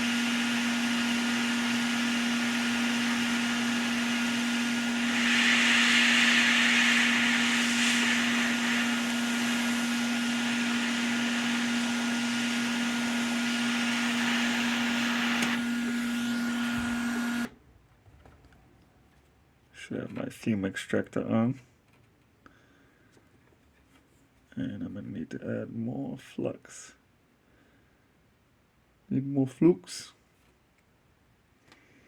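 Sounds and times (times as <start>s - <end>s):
hot air blower humming: 0.0s - 17.5s.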